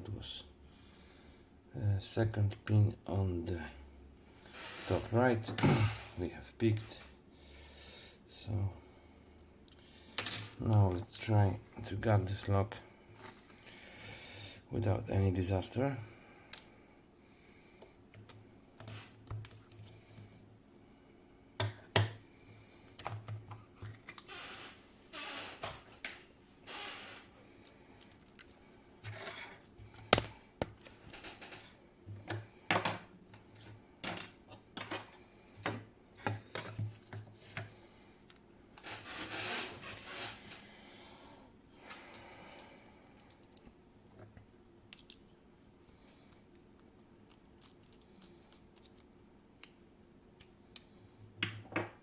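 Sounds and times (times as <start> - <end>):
metal rubbing and sliding: 38.8 - 40.6.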